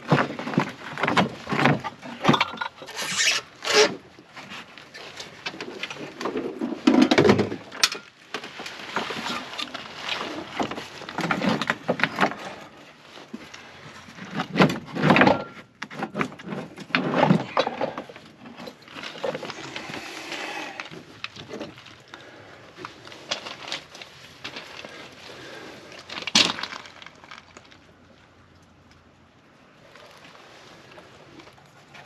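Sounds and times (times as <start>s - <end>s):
heater parts clunking and scraping: 13.4s - 21.8s.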